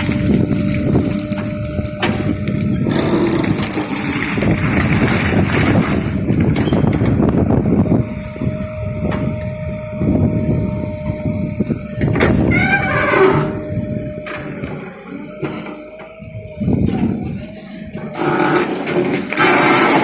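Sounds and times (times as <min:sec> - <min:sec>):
rough crackling noise: 0:00.0 - 0:07.3
backhoe engine running: 0:00.0 - 0:20.0
steady whine: 0:00.0 - 0:20.0.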